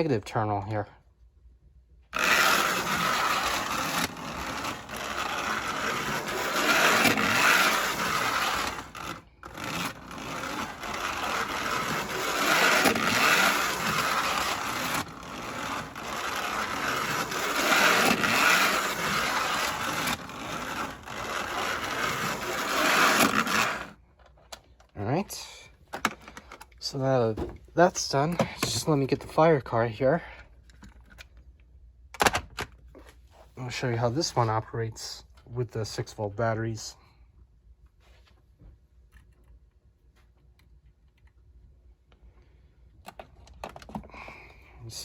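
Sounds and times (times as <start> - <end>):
small motor whirring: 2.1 - 24.0
toy wheels rumbling on metal track: 2.1 - 24.0.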